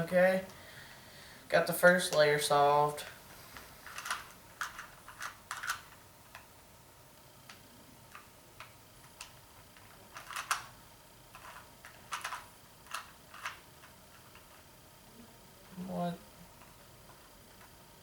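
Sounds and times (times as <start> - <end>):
plastic puzzle cube clicking: 10.1 - 10.7.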